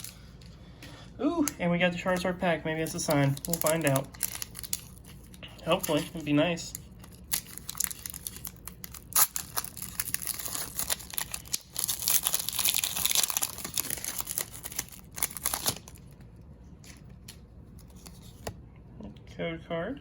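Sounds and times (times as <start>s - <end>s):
foil wrapper crinkling and tearing: 0.0s - 0.3s, 2.0s - 16.2s.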